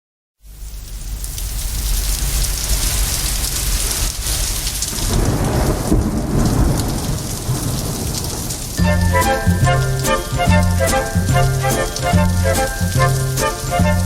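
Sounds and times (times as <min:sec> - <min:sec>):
heavy rain: 0:00.4 - 0:14.0
rolling thunder rumble: 0:04.9 - 0:14.0.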